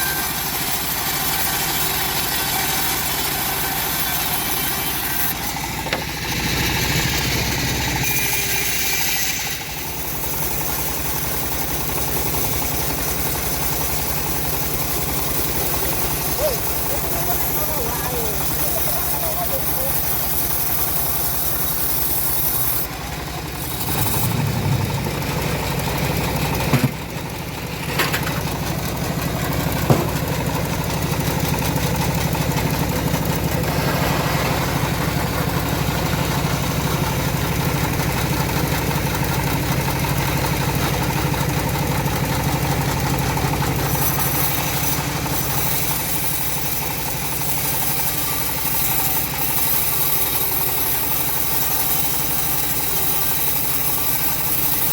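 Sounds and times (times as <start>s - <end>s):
sawmill engine running: 0.0s - 54.9s
sharp knock: 5.8s - 6.4s, 29.8s - 30.3s.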